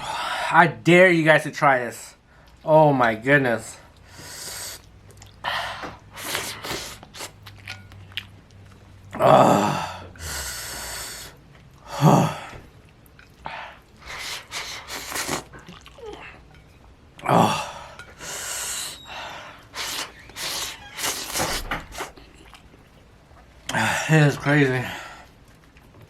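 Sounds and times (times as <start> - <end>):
man gasping and hissing air: 4.1 - 4.8, 9.5 - 12.6.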